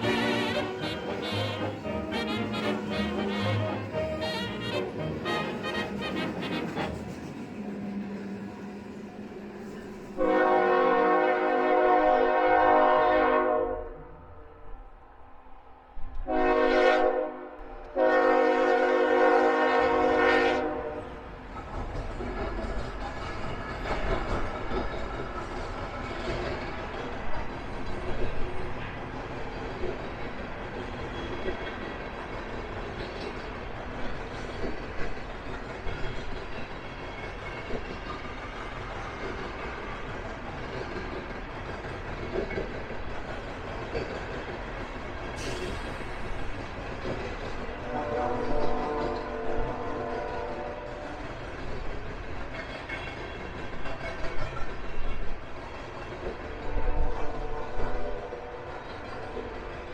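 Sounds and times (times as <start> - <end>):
locomotive air horn: 0.0 - 7.2, 10.2 - 14.1, 16.3 - 21.1, 47.8 - 51.2, 56.9 - 58.7
train rumble: 0.0 - 59.9.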